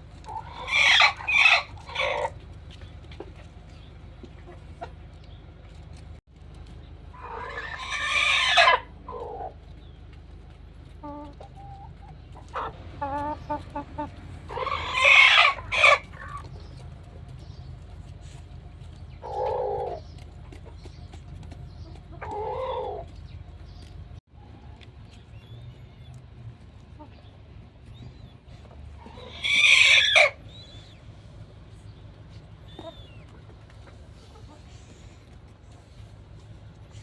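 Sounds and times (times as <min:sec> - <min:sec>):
rooster clucking: 0:00.1 - 0:05.2, 0:07.1 - 0:09.7, 0:10.9 - 0:17.0, 0:19.1 - 0:23.2, 0:28.5 - 0:31.0, 0:32.6 - 0:36.1
rooster calling: 0:00.3 - 0:02.4, 0:07.2 - 0:09.5, 0:14.4 - 0:16.5, 0:29.0 - 0:30.6.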